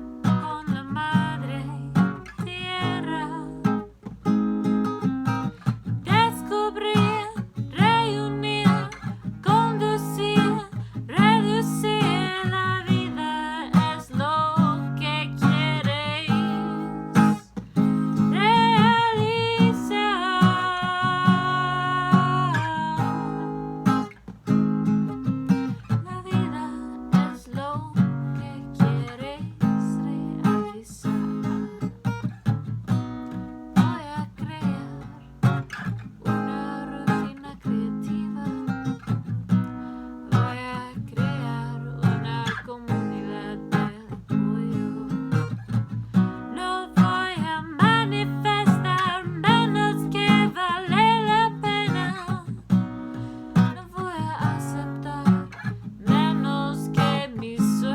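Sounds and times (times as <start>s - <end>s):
acoustic guitar strumming: 0.0s - 57.9s
person singing: 6.1s - 17.4s, 18.2s - 23.6s, 46.6s - 52.6s, 53.6s - 57.9s.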